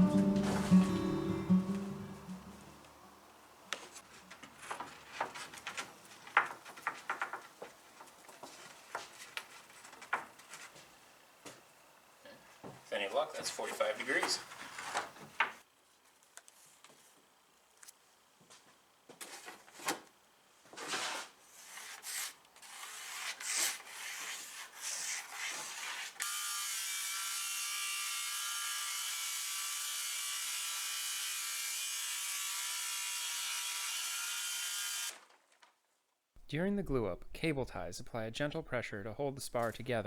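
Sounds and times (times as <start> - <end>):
woodworking power tool running: 26.2 - 35.2.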